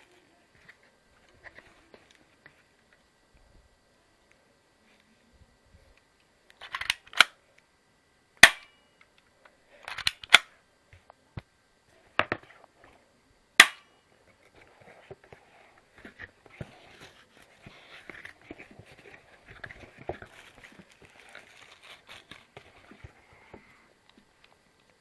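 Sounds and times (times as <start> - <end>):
bb pistol snaps and clicks: 6.6 - 7.4, 8.4 - 8.7, 9.9 - 10.5, 13.6 - 13.9.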